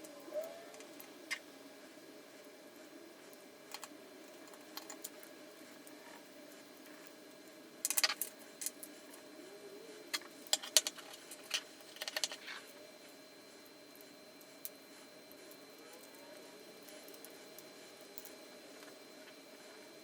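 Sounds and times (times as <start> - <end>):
plastic parts clicking and tapping: 10.1 - 12.4.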